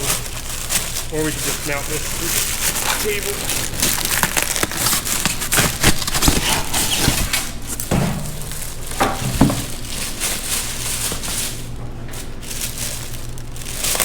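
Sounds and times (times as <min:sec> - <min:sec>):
packaging crackling and rustling: 0:00.0 - 0:14.0
heavy knocks: 0:07.7 - 0:10.4.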